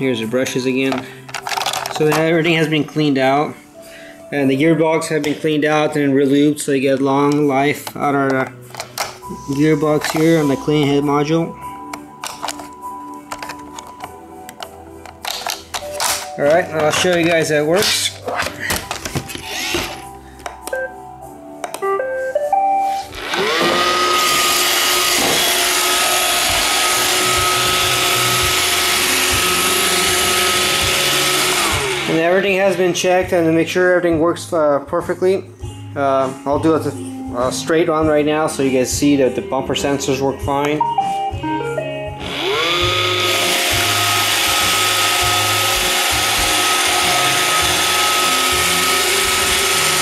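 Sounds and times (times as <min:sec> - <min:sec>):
robot vacuum whining: 0:19.4 - 0:20.0, 0:22.9 - 0:32.2, 0:42.2 - 0:50.0.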